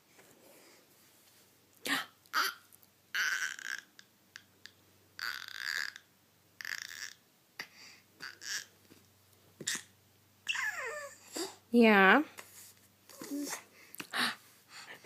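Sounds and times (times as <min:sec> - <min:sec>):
baby making breathy sounds: 0:10.5 - 0:11.6, 0:13.1 - 0:14.4.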